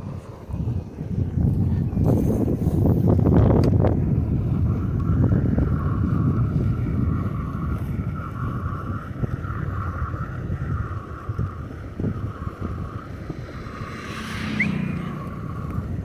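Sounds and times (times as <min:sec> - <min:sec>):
mid-pitched whir: 0:00.0 - 0:16.0
wind buffeting microphone: 0:00.0 - 0:16.0
short rising chirp: 0:13.9 - 0:15.5.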